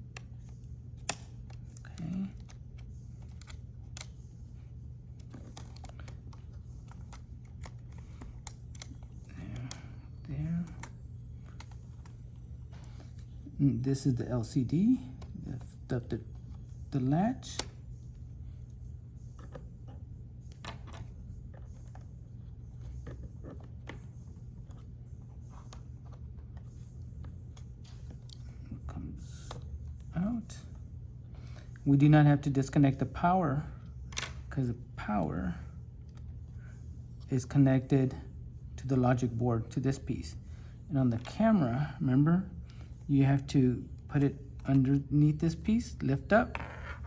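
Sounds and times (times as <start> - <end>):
clicks and handling of laptop connectors: 0.0 - 13.5, 14.2 - 28.6, 34.1 - 34.6
steady low hum: 0.0 - 47.0.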